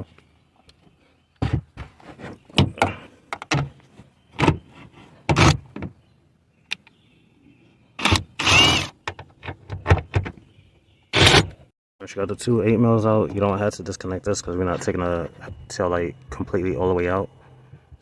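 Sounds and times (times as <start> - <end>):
scraping and rubbing: 1.8 - 2.5.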